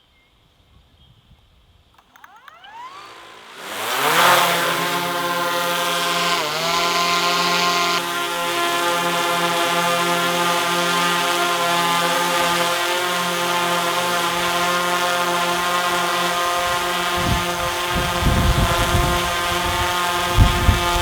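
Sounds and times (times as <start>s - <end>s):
drone propellers whining: 2.0s - 21.0s
wind buffeting microphone: 16.7s - 21.0s.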